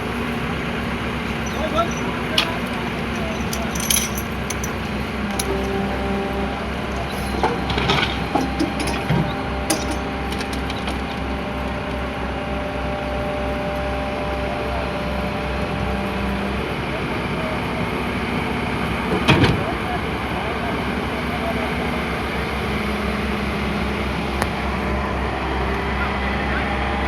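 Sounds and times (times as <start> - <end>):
metal clinks and knocks: 1.3 - 5.9, 8.3 - 9.1, 9.7 - 10.6.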